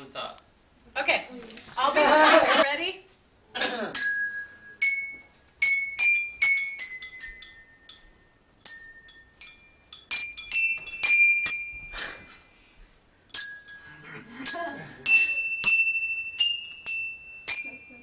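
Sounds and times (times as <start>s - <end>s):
hand bells ringing a tune: 4.0s - 12.6s, 13.3s - 18.0s.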